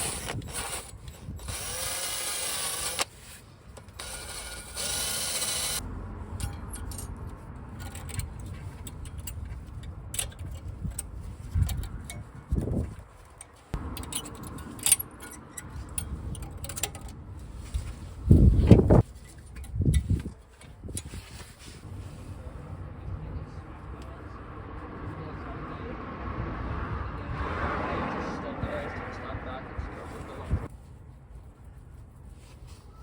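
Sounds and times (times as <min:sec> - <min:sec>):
power tool whirr: 0:00.0 - 0:05.8
brake parts scraping and clinking: 0:00.0 - 0:21.9.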